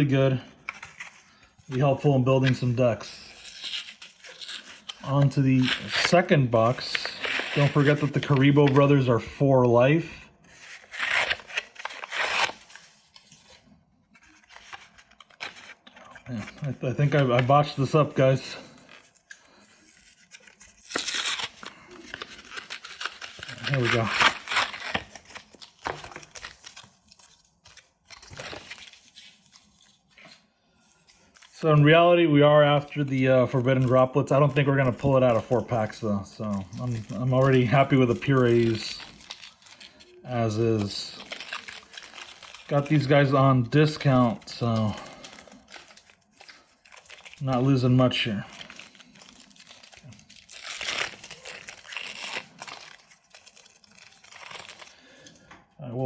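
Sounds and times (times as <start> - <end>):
plastic and foil packaging crinkling: 0.4 - 55.8.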